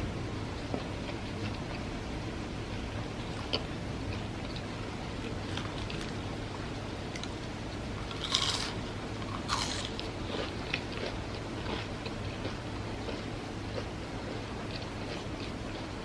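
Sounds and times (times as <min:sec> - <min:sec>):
chewing crackles: 0:03.2 - 0:06.2, 0:07.1 - 0:16.0
crunching bites into fried food: 0:07.2 - 0:13.9.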